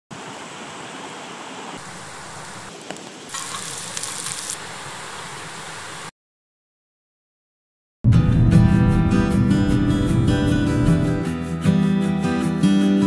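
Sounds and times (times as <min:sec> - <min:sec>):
wood fire crackling: 0:01.8 - 0:04.8.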